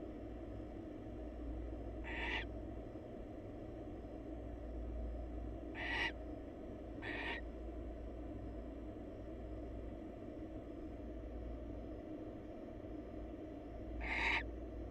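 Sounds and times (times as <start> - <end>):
steady low camera hum: 0.0 - 14.9
barn owl harsh calls: 2.0 - 2.6, 5.7 - 6.2, 6.9 - 7.5, 14.0 - 14.6.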